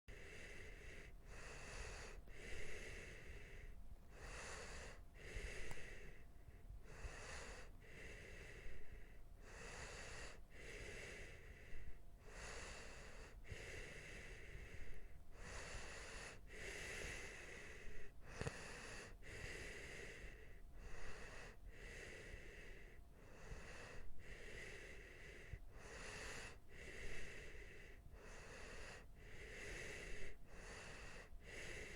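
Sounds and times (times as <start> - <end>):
person breathing heavily while sleeping: 0.1 - 31.9.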